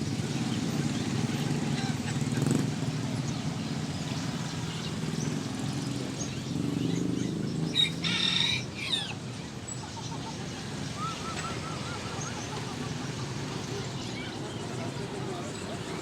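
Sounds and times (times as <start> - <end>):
birds chirping: 0.0 - 16.0
loud bird call: 7.7 - 9.2, 9.8 - 14.4.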